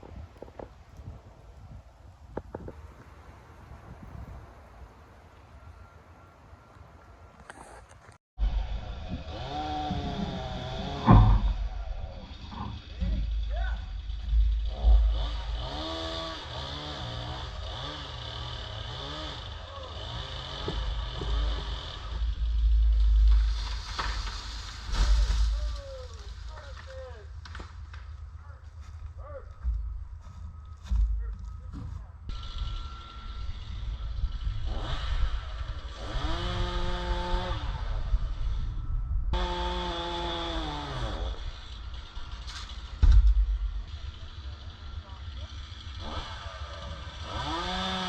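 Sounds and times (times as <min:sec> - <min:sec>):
wind buffeting microphone: 0:00.0 - 0:07.4, 0:08.4 - 0:16.9, 0:28.9 - 0:39.4
chainsaw engine revving: 0:08.4 - 0:26.6, 0:32.3 - 0:38.5, 0:39.4 - 0:48.0.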